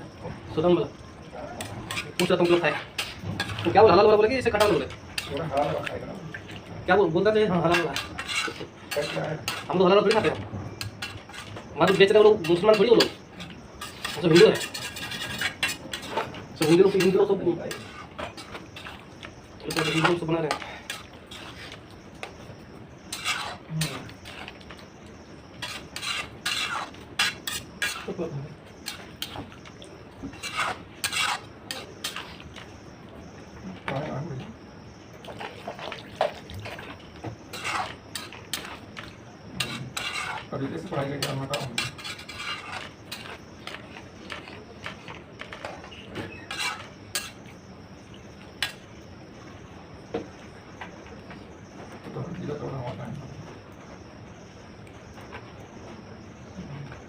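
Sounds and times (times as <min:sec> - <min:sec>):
metal spoon scraping cooking pot: 0:01.5 - 0:05.9, 0:07.4 - 0:28.2, 0:28.8 - 0:32.8, 0:35.4 - 0:47.7.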